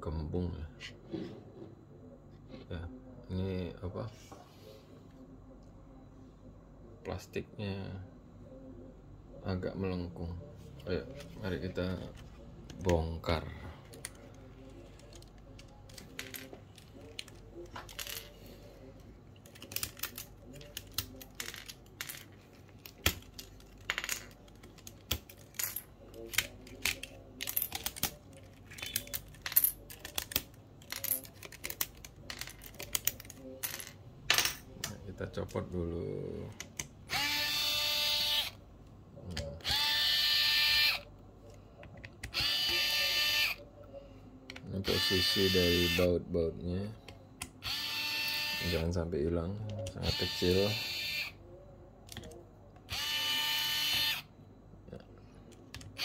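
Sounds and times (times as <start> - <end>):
electric screwdriver whining: 37.1 - 38.6, 42.3 - 43.6, 52.9 - 54.2.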